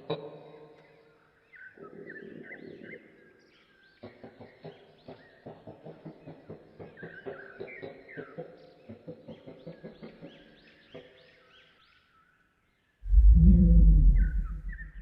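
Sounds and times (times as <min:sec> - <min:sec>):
bird chirps: 0:13.1 - 0:15.0
low growling rumble: 0:13.1 - 0:15.0.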